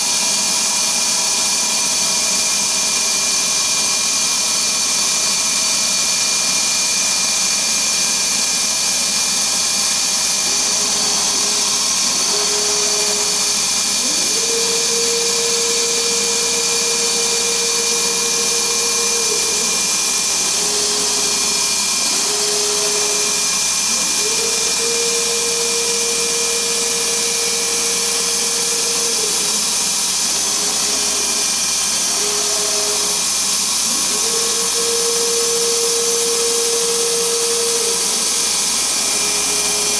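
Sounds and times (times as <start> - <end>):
machine whirring hiss: 8.4 - 39.9.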